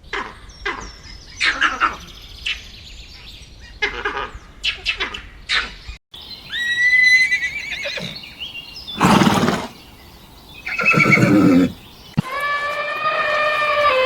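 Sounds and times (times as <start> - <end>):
horse whinnying: 6.5 - 8.3, 9.0 - 9.8, 10.6 - 11.8.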